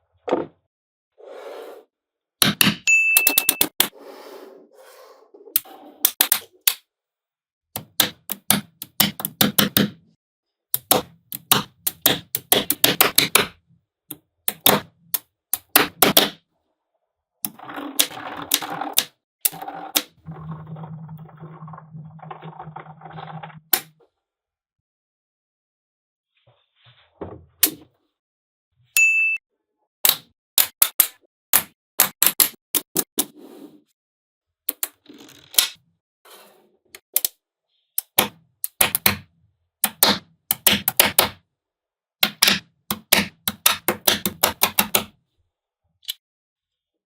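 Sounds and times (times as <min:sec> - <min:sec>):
balls rattling and rolling: 0:17.5 - 0:23.9.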